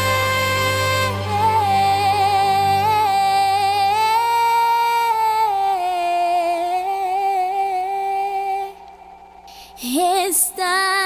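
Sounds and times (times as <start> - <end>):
low sustained bass note: 0.0 - 6.2
high gliding melody with vibrato: 0.0 - 7.5.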